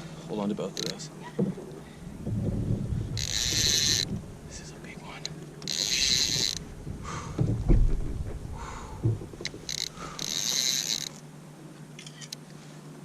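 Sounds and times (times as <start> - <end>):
fishing reel ratcheting: 0.7 - 1.0, 3.2 - 4.1, 5.6 - 6.6, 9.4 - 11.2
dull knocks: 1.3 - 4.3, 6.4 - 9.8.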